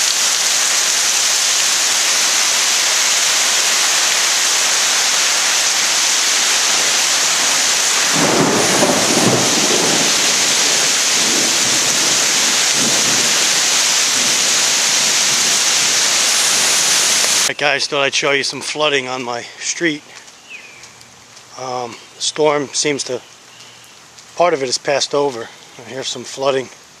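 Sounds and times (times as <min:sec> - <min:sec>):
heavy rain pouring: 0:00.0 - 0:27.0
thunder rumbling: 0:02.2 - 0:17.5.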